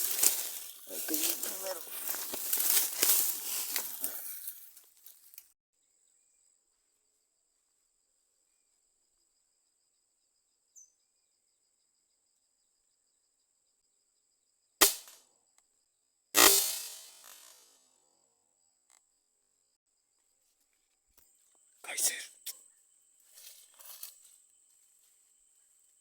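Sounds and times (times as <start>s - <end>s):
sharp gunshot: 14.8s - 15.2s, 16.4s - 17.7s.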